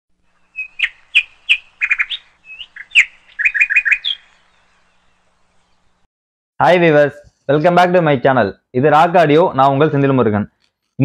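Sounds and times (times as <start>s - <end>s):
bird chirping: 0.2s - 6.1s.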